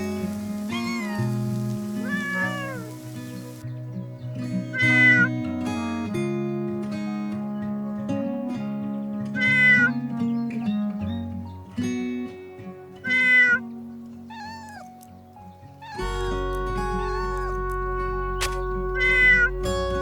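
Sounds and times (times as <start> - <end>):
background music of sustained notes: 0.0 - 20.0
cat meowing: 0.7 - 2.9, 4.7 - 5.3, 9.4 - 9.9, 13.0 - 13.6, 14.3 - 15.0, 15.8 - 17.7, 19.0 - 19.5.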